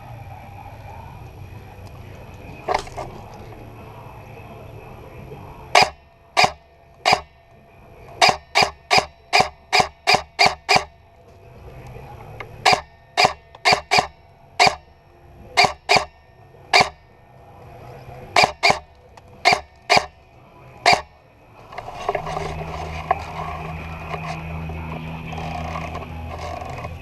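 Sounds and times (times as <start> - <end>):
low hum with noise: 0.0 - 27.0
airsoft gun shots: 5.8 - 7.3, 8.2 - 10.9, 12.6 - 14.8, 15.6 - 17.0, 18.4 - 18.8, 19.4 - 20.1, 20.9 - 21.1.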